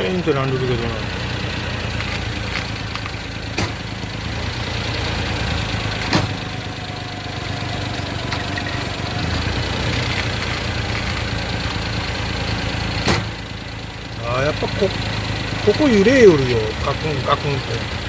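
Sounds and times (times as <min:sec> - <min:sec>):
car engine idling: 0:00.0 - 0:18.0
sharp clunks from chassis: 0:02.0 - 0:03.9, 0:06.0 - 0:06.5, 0:13.0 - 0:13.5.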